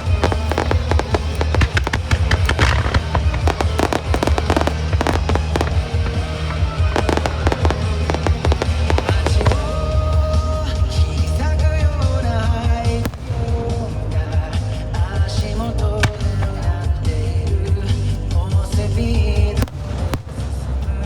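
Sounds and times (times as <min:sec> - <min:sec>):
fireworks bangs and crackles: 0:00.0 - 0:21.0
music from loudspeakers: 0:00.0 - 0:21.0.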